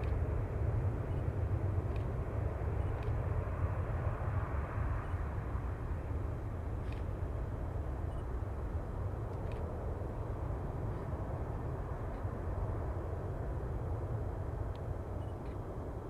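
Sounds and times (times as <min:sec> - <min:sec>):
jet engines deep rumble: 0:00.0 - 0:16.0.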